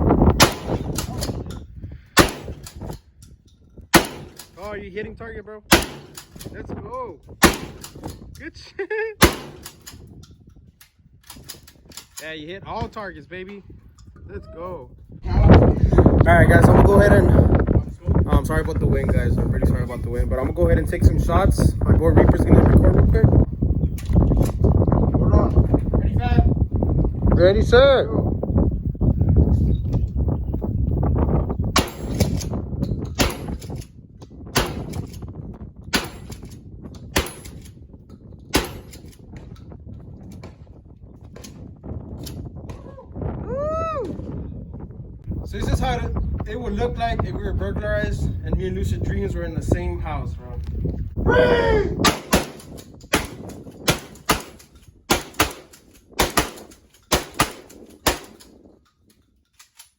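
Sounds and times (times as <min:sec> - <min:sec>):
wind buffeting microphone: 0:00.0 - 0:59.9
gunshots: 0:00.4 - 0:01.3, 0:02.2 - 0:02.7, 0:03.9 - 0:04.6, 0:05.7 - 0:06.5, 0:07.4 - 0:08.1, 0:09.2 - 0:09.9, 0:31.8 - 0:32.3, 0:33.2 - 0:33.7, 0:34.6 - 0:35.0, 0:35.9 - 0:36.4, 0:37.2 - 0:37.6, 0:38.5 - 0:39.0, 0:52.0 - 0:58.4.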